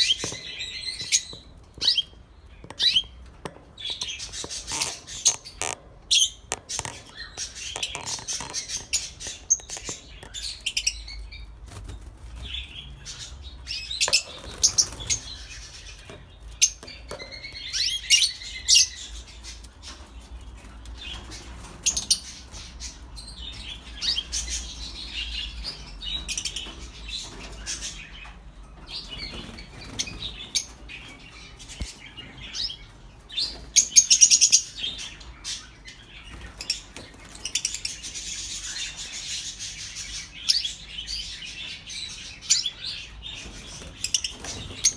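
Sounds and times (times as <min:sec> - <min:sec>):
lovebirds chirping and chattering: 0:00.0 - 0:44.9.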